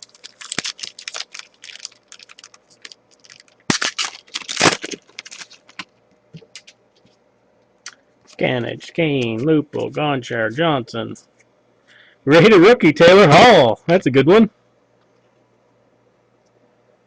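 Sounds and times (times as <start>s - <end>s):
wrapper crinkling: 0.0s - 6.7s
wrapper tearing: 0.0s - 6.7s.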